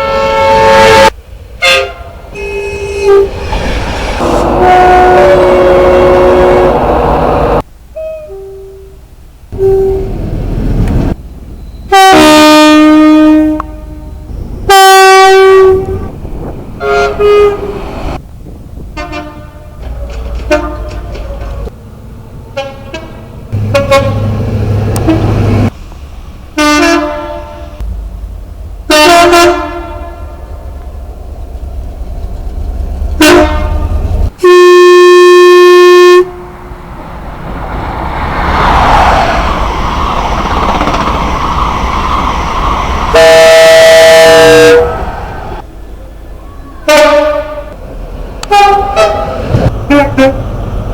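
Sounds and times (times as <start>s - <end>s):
train horn blasts: 0.0s - 9.0s, 9.6s - 10.2s, 11.9s - 16.1s, 16.8s - 17.8s, 19.0s - 21.3s, 22.6s - 24.4s, 25.0s - 25.5s, 26.6s - 27.8s, 28.9s - 30.6s, 33.2s - 36.6s, 43.1s - 45.0s, 46.8s - 47.8s, 48.4s - 50.4s
train rumble: 0.0s - 34.7s, 35.4s - 50.9s.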